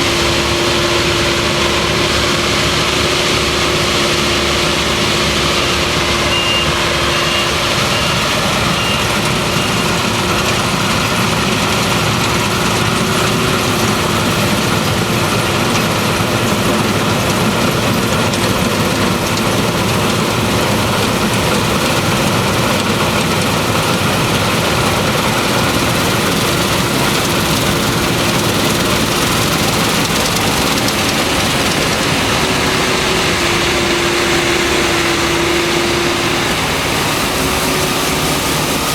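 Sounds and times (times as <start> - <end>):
combine harvester running: 0.0 - 38.9.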